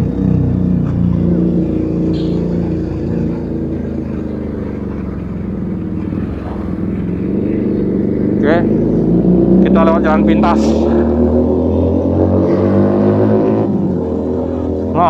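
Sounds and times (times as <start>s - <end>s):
motorcycle engine exhaust note: 0.0s - 15.0s.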